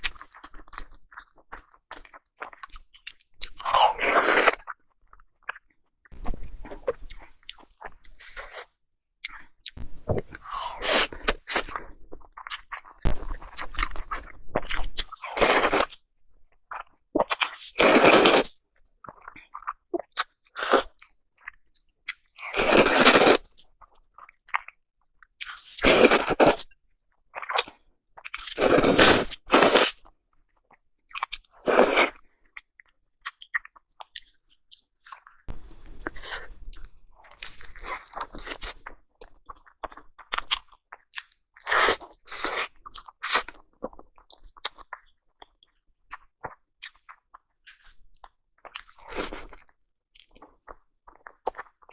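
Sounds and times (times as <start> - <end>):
person chewing: 0.0 - 5.6, 6.2 - 16.0, 16.7 - 18.5, 19.1 - 24.7, 25.4 - 26.7, 27.4 - 30.0, 31.1 - 51.9
crunchy bites: 13.1 - 16.0, 28.4 - 30.0.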